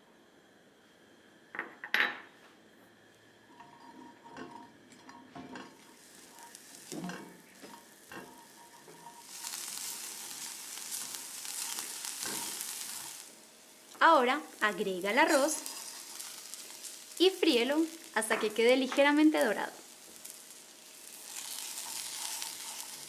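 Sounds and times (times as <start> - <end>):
utensil stirring in pot: 5.6 - 18.3, 19.7 - 23.0
onion sizzling in fat: 5.6 - 23.0.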